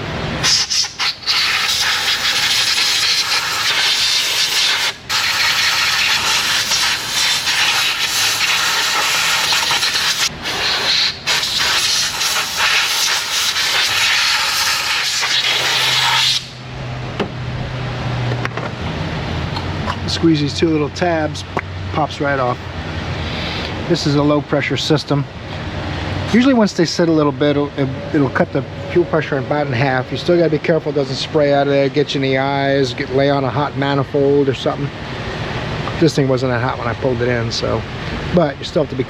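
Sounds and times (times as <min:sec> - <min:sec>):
air hissing from a nozzle: 0:00.4 - 0:16.6.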